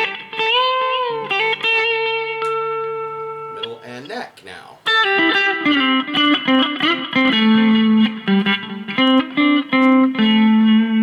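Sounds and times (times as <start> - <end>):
clean electric guitar lick: 0.0 - 11.0.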